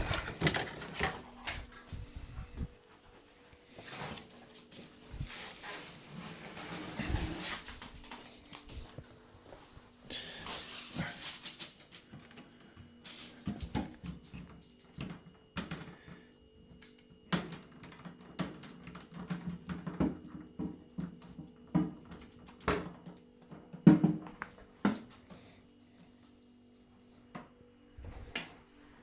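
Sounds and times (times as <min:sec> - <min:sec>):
cardboard and plastic rustling: 0:00.0 - 0:14.8.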